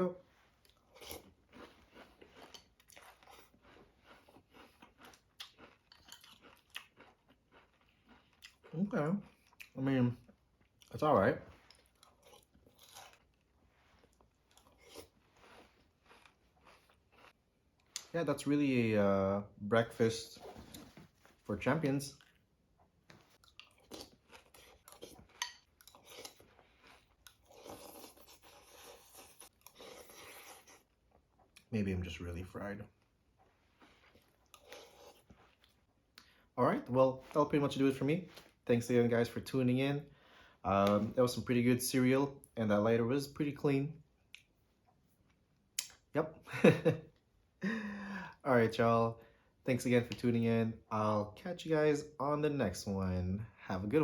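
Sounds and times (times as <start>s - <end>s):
person chewing cereal: 0.2s - 18.5s, 22.0s - 32.2s, 32.9s - 38.6s.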